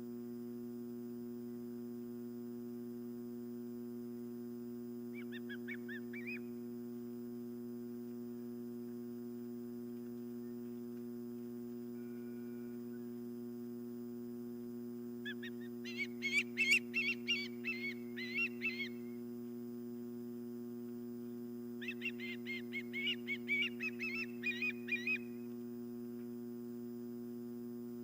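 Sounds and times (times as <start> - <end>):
electrical mains hum: 0.0 - 28.0
osprey whistled calls: 5.1 - 6.5, 15.2 - 19.1, 21.8 - 25.4.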